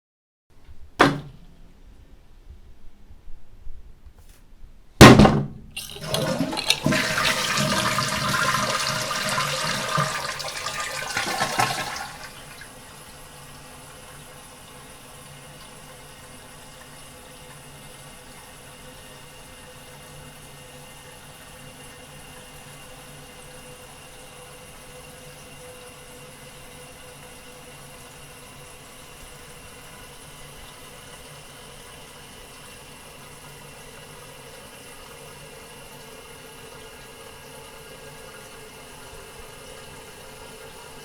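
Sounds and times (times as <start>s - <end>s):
toilet tank refilling hiss: 5.7s - 41.0s
toilet flush rushing water: 5.8s - 41.0s.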